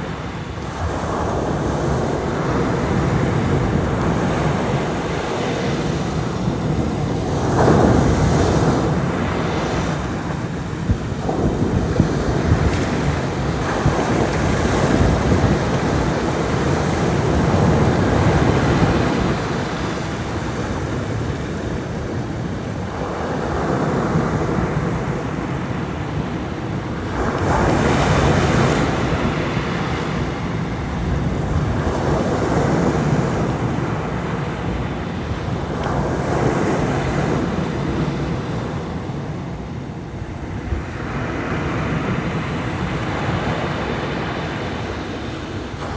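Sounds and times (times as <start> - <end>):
waves crashing on shore: 0.0 - 45.9
wind buffeting microphone: 0.6 - 25.9.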